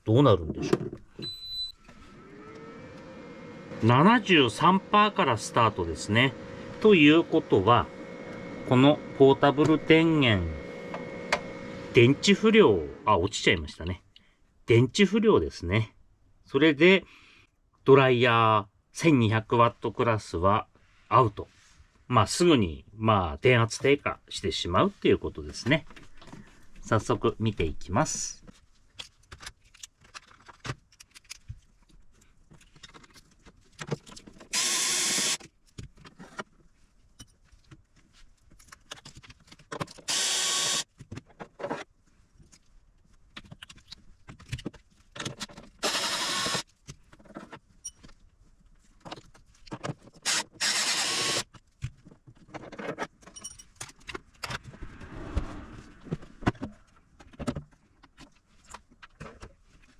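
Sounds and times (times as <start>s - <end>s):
electric screwdriver running: 34.5s - 35.4s, 40.1s - 40.8s, 45.8s - 46.6s, 50.2s - 51.4s.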